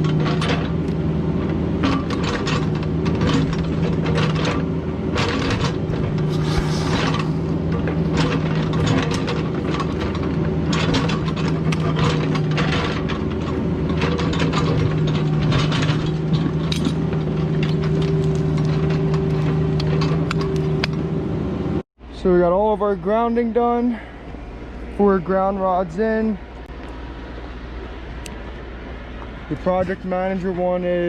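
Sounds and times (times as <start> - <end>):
metal clanking and scraping in dirt: 0.0 - 21.1
excavator diesel engine running: 0.0 - 21.8.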